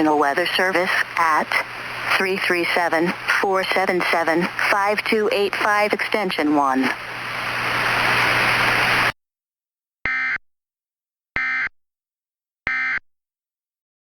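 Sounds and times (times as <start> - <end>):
steady hiss: 6.9 - 9.1.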